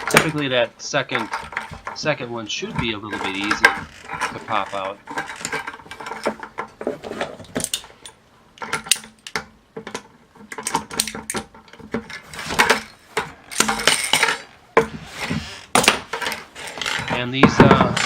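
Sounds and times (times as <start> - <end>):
pliers clicking and scraping on metal: 7.5 - 14.6.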